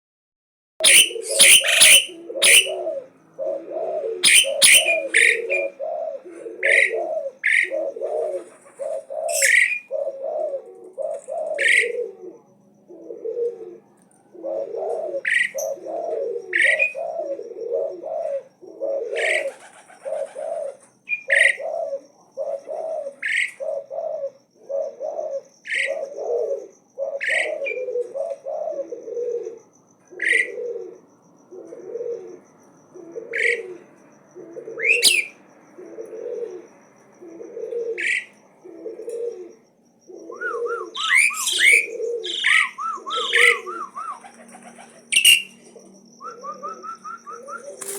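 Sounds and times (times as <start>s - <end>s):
starling whistled notes: 0.8s - 2.8s, 4.2s - 5.7s, 34.8s - 35.4s, 40.3s - 47.9s
quick chirps: 40.9s - 47.9s.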